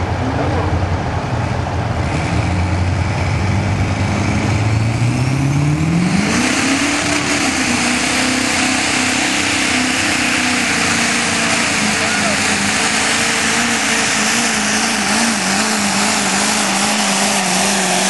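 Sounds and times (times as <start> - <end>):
diesel engine pulling under load: 0.0 - 18.0
loud hissing rush: 6.3 - 18.0.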